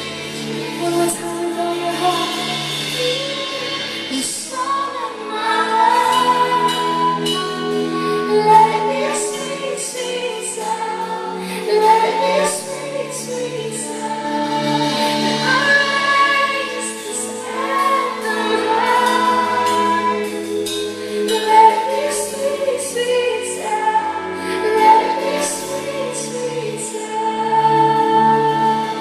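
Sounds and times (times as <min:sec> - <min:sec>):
worship song with band: 0:00.0 - 0:29.0.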